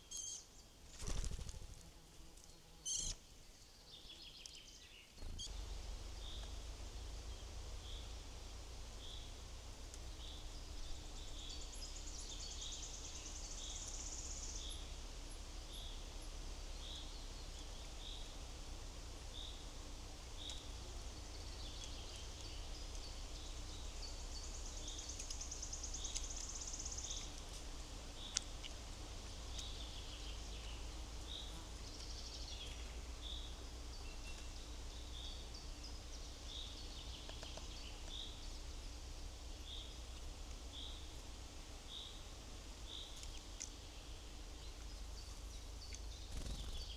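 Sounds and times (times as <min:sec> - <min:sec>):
steady low rumble: 0:05.2 - 0:13.1.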